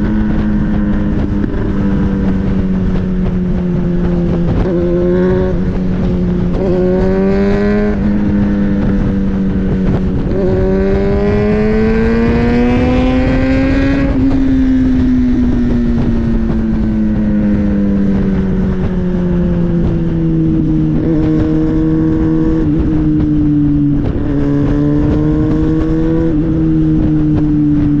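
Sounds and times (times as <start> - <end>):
motorcycle engine accelerating: 0.0 - 28.0
wind rushing: 0.0 - 28.0.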